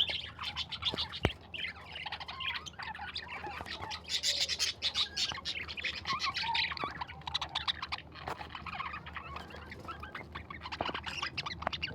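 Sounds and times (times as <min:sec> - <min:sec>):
birds chirping and calling: 0:00.0 - 0:11.9.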